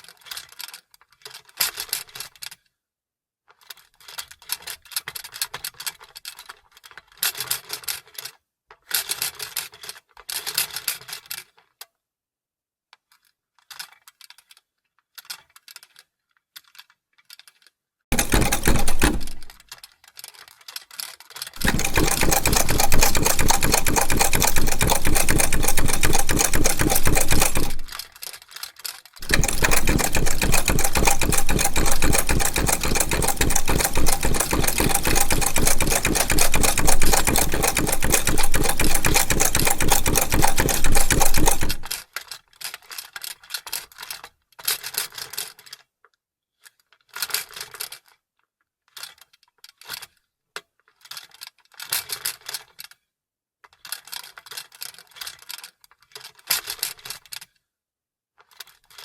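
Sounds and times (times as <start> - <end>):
handling noise: 18.1 - 19.6, 21.6 - 28.0, 29.2 - 41.9
sewing machine stitching: 18.1 - 19.6, 21.6 - 28.0, 29.2 - 42.0.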